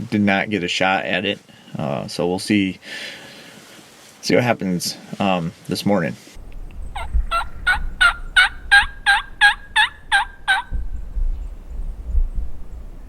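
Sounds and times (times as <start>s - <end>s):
turkey yelps: 6.8s - 10.8s.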